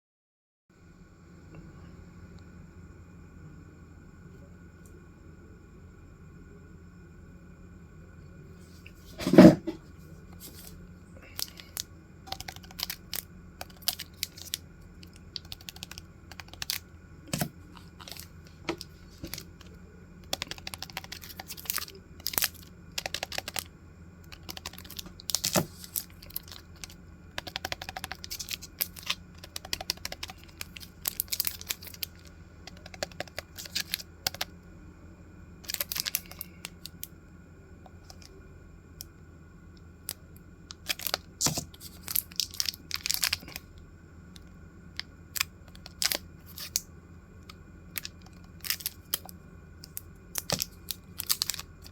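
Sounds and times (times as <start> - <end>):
packaging rustling and tearing: 11.4 - 14.6, 24.3 - 27.0, 27.9 - 32.3, 35.7 - 36.4, 40.8 - 43.6, 45.8 - 46.8, 48.0 - 49.3, 50.4 - 51.9
packaging clicks and taps: 49.9 - 51.9.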